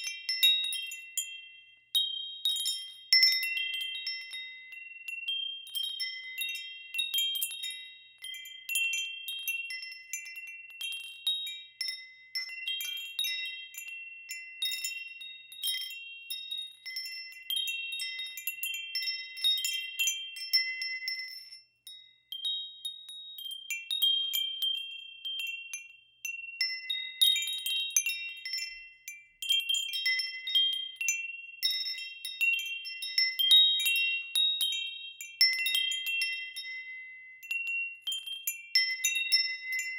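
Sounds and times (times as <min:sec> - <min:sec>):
wind chimes ringing: 0:00.0 - 0:39.9.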